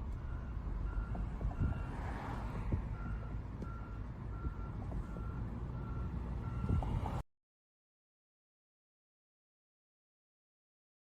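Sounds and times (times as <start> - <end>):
reversing alarm beeping: 0.2 - 2.0, 3.0 - 6.9.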